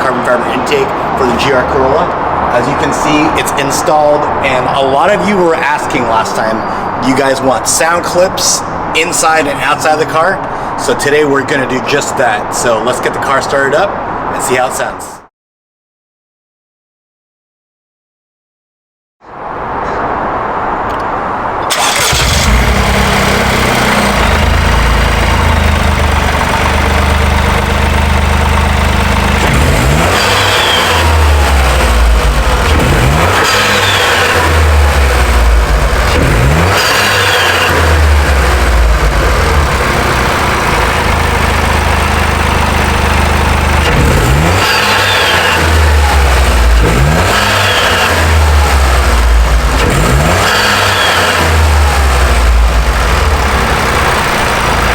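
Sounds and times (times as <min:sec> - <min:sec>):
car engine starting and idling: 0:20.9 - 0:54.9
engine revving: 0:21.7 - 0:54.9.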